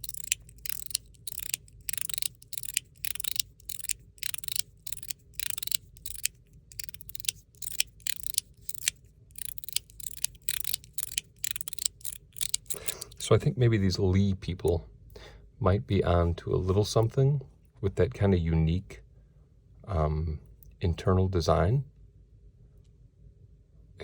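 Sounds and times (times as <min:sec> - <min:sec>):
metal slider scraping and clicking: 0:00.0 - 0:13.2.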